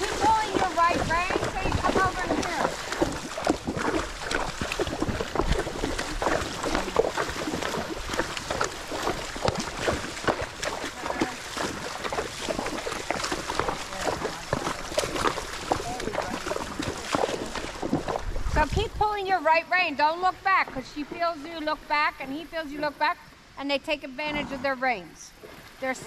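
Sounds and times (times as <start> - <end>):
horse hoof steps: 0.0 - 22.1.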